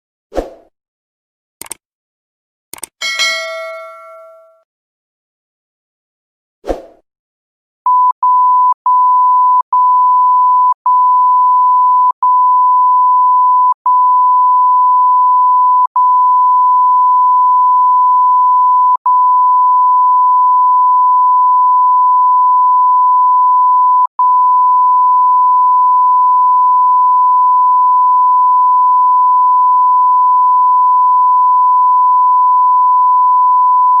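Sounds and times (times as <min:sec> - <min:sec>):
high-pitched censor beep: 0:07.9 - 0:34.0.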